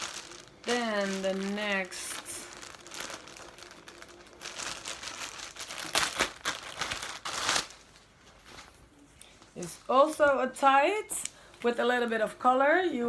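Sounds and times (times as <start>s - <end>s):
plastic bag crinkling: 0.0s - 8.8s.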